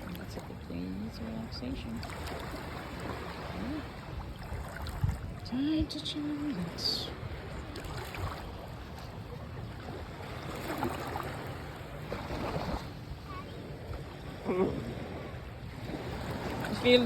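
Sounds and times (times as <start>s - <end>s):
gentle surf at shoreline: 0.0s - 17.0s
wind on microphone: 0.0s - 17.0s.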